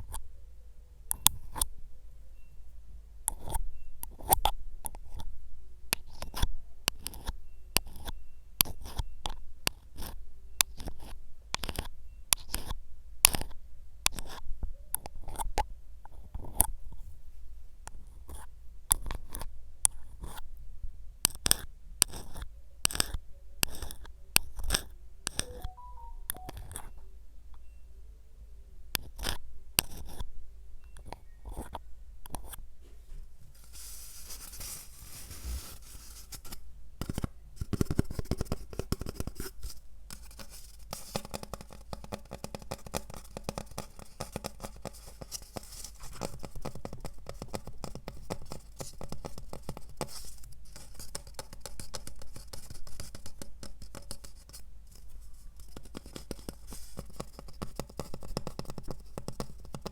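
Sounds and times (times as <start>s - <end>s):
scratching and crackling handling noise: 32.4s - 42.2s, 42.8s - 59.9s.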